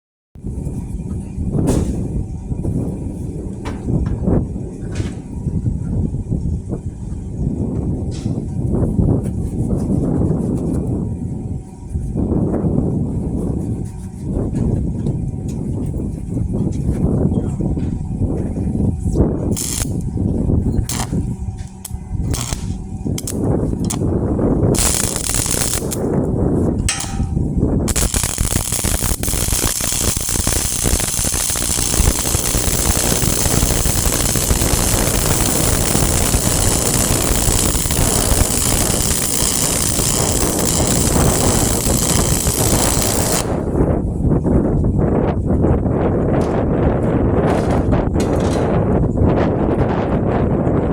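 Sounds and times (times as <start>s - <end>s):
arc welding: 19.5s - 20.1s, 20.8s - 24.1s, 24.7s - 44.0s.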